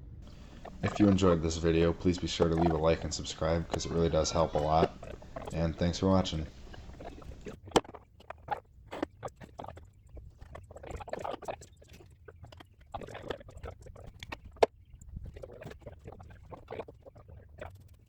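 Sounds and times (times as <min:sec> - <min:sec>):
rustling: 0:00.2 - 0:07.8.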